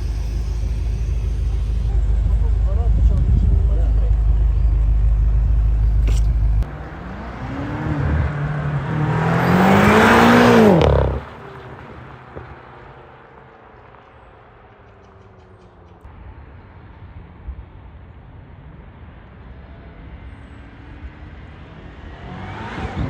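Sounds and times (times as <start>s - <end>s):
loud low rumble: 0.0s - 6.7s
car engine revving: 0.0s - 14.8s, 20.4s - 23.0s.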